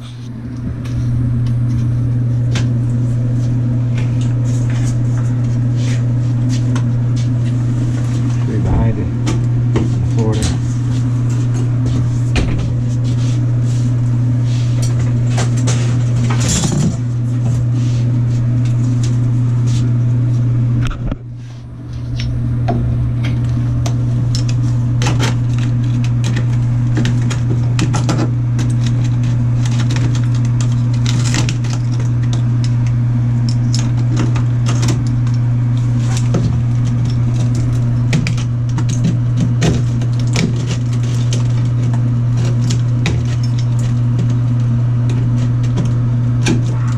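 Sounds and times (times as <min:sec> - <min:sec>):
steady low hum: 0:00.0 - 0:46.9.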